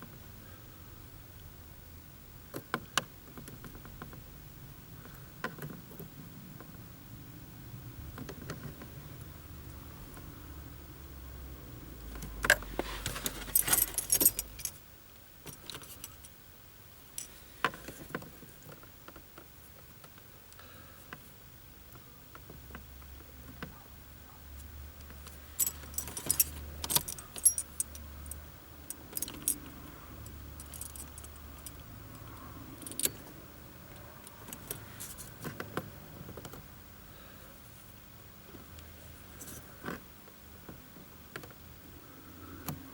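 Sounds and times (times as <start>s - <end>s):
car keys jingling: 12.2s - 14.8s, 25.1s - 33.4s, 34.0s - 35.6s.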